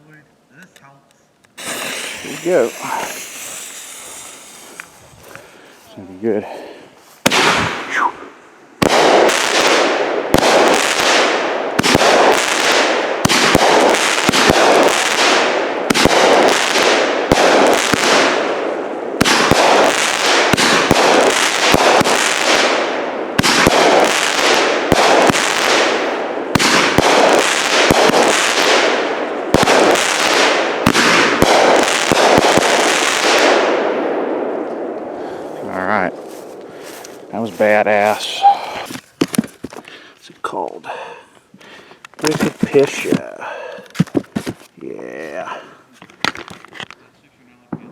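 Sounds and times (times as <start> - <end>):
firework cake firing: 1.6 - 5.5, 8.8 - 18.5, 19.2 - 33.8.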